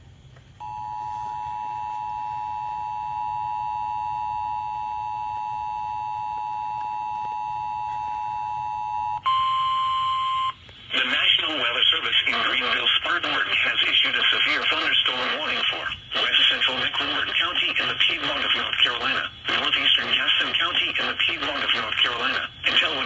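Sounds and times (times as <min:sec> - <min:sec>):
two-tone alarm: 0:00.6 - 0:10.6.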